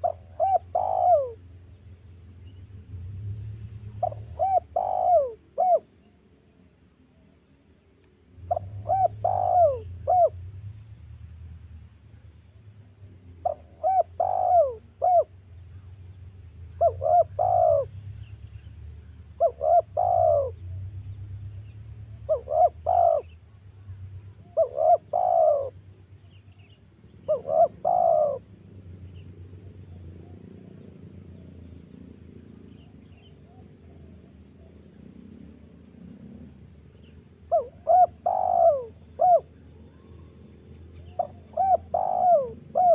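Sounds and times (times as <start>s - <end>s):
dove cooing: 0.0s - 1.6s, 3.9s - 6.0s, 8.4s - 10.5s, 13.4s - 15.4s, 16.7s - 18.1s, 19.3s - 20.9s, 22.2s - 23.4s, 24.4s - 25.8s, 26.5s - 28.6s, 37.4s - 40.4s, 41.0s - 42.9s
low steady hum: 0.0s - 42.9s.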